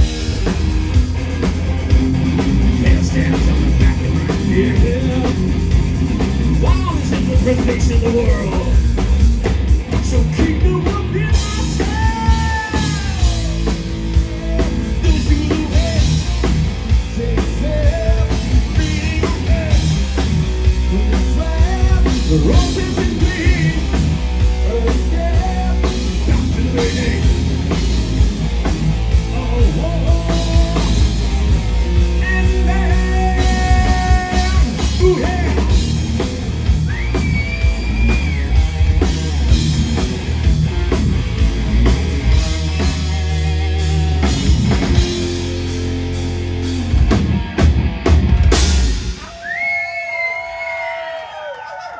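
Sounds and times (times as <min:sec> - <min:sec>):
live heavy metal band playing: 0:00.0 - 0:49.9
person singing: 0:02.7 - 0:05.6, 0:09.9 - 0:13.8, 0:17.1 - 0:20.0, 0:20.9 - 0:27.5, 0:29.2 - 0:31.2, 0:32.0 - 0:35.8
heavy drum hits: 0:46.8 - 0:49.4.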